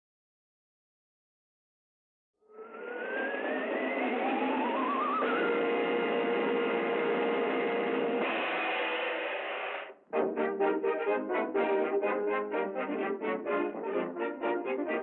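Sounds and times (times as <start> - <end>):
orchestral music with held chords: 10.1 - 15.0.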